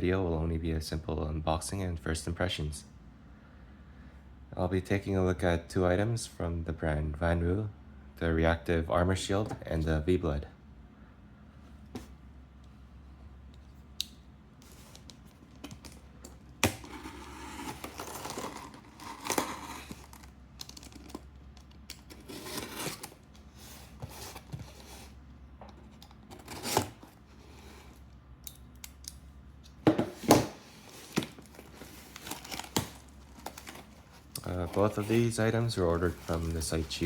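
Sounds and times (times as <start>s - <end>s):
packaging rustling and tearing: 14.7s - 25.1s, 26.3s - 27.2s, 30.7s - 37.0s.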